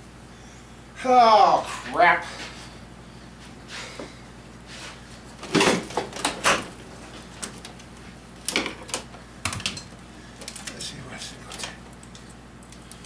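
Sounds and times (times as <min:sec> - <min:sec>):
knocks and clunks of tools: 0:05.4 - 0:06.7.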